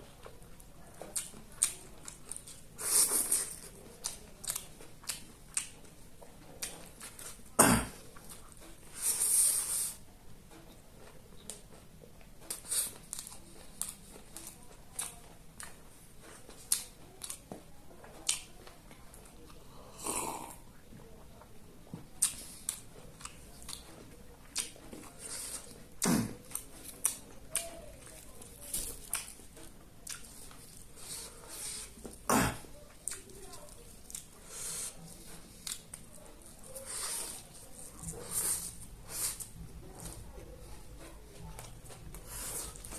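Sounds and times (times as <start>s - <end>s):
chewing with wet smacks: 0.1s - 10.0s, 10.6s - 20.1s, 20.7s - 42.9s.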